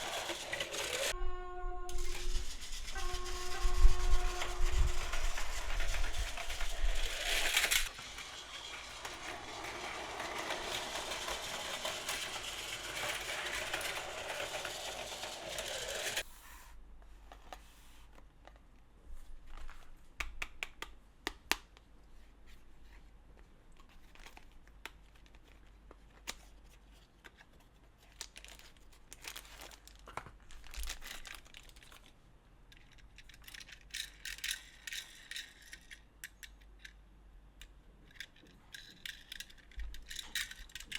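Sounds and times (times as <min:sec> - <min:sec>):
toy train whirring rattle: 0:00.0 - 0:01.2, 0:01.9 - 0:16.3, 0:30.7 - 0:32.1, 0:32.7 - 0:37.0, 0:38.1 - 0:40.9.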